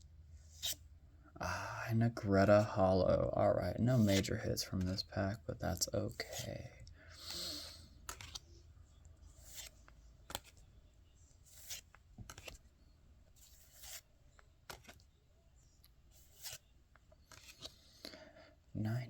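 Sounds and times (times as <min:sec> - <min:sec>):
trading cards sliding: 0:00.5 - 0:00.8, 0:04.0 - 0:04.3, 0:07.2 - 0:08.6, 0:09.2 - 0:10.7, 0:11.4 - 0:12.6, 0:13.3 - 0:15.1, 0:16.1 - 0:18.1.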